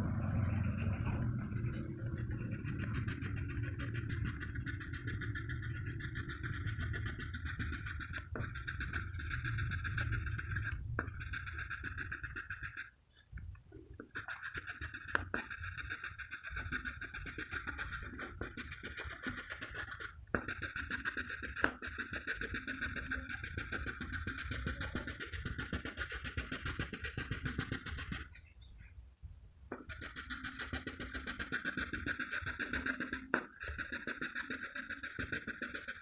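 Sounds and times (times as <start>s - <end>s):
pencil ticks on paper: 0.8s - 12.9s, 14.0s - 28.4s, 29.7s - 36.0s
pencil scratching on paper: 14.0s - 28.4s.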